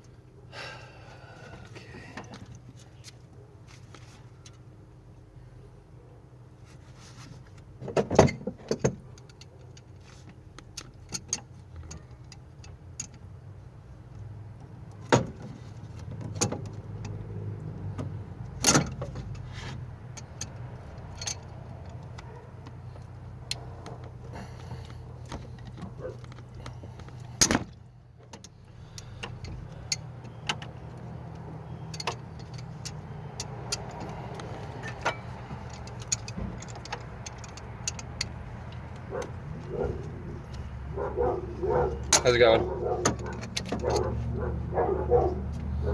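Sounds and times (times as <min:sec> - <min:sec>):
metal tools clinking on engine parts: 0:28.3 - 0:45.2.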